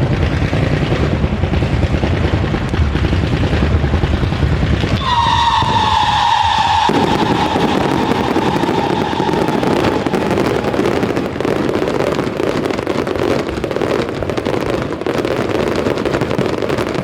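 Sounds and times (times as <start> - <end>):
fireworks bangs and crackling: 0.0 - 17.0
firework whistling: 0.2 - 17.0.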